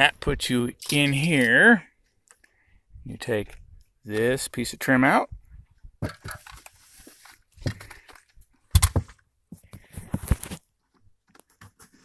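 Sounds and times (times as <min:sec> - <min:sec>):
scraping rustles: 0:06.1 - 0:08.1.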